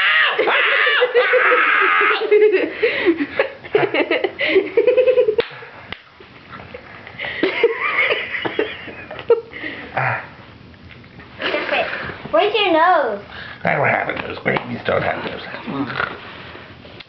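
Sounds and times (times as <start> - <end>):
child giggling: 0.2 - 5.4.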